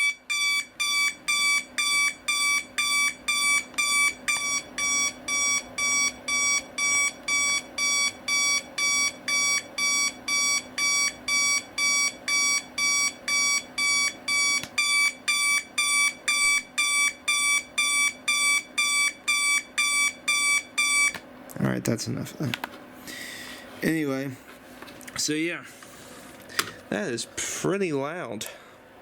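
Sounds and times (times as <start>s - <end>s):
alarm clock beeping: 0.0s - 21.2s.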